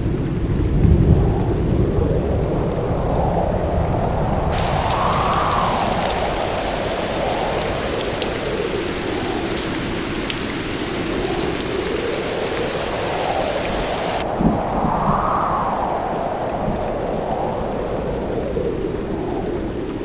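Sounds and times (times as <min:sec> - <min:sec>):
heavy rain pouring: 0:00.0 - 0:20.0.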